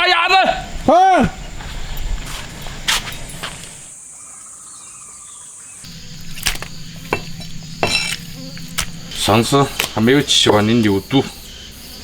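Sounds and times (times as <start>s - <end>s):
insect trilling: 3.9s - 12.0s.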